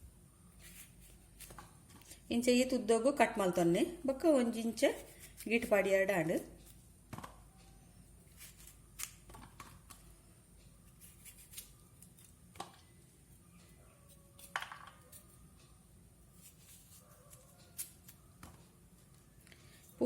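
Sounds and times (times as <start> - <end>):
blade snipping through pods: 8.3 - 10.0.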